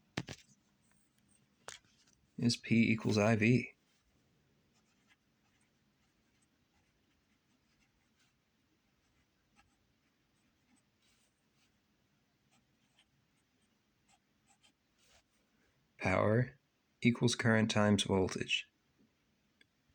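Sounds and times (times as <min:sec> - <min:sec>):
pen scratching while writing: 0:04.8 - 0:08.4.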